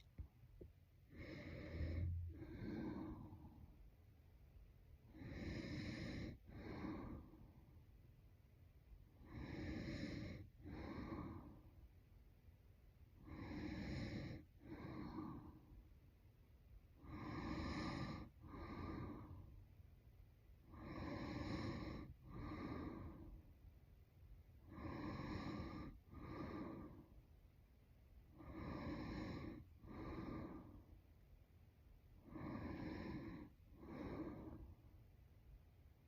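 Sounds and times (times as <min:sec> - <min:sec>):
woman snoring: 0:01.1 - 0:03.3, 0:05.1 - 0:07.2, 0:09.2 - 0:11.4, 0:13.2 - 0:15.3, 0:17.0 - 0:19.2, 0:20.7 - 0:23.2, 0:24.7 - 0:27.0, 0:28.4 - 0:30.6, 0:32.3 - 0:34.6.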